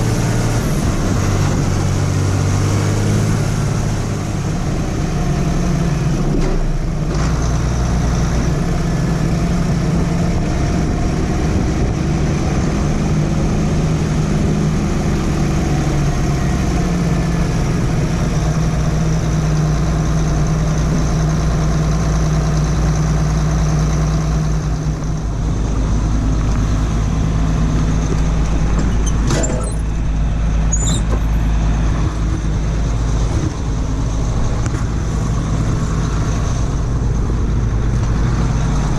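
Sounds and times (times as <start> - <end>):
large engine running: 0.0 - 38.9
high-pitched clicks or squeaks: 28.1 - 29.9, 30.7 - 31.3.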